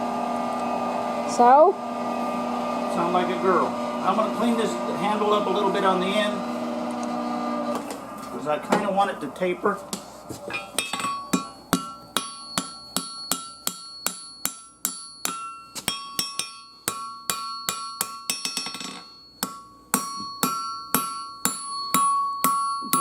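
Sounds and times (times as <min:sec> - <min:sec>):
hammer striking steel on anvil: 0:09.9 - 0:23.0.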